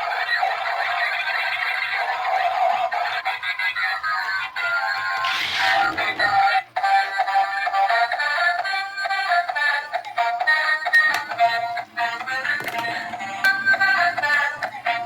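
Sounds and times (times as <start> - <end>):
synthetic singing voice: 0.0 - 15.0.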